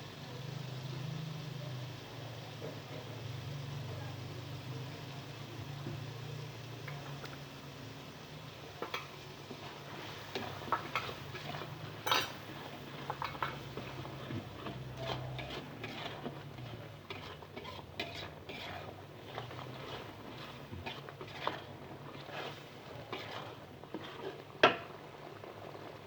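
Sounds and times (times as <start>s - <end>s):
utensil scraping in a pot: 8.8s - 26.0s.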